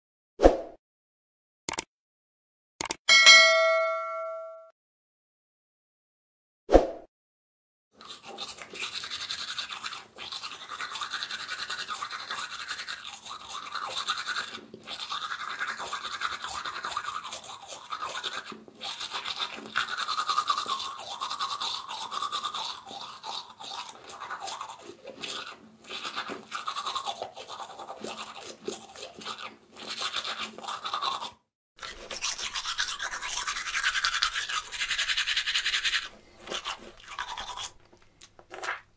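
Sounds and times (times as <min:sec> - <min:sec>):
toothbrush scrubbing teeth: 0:08.0 - 0:38.9.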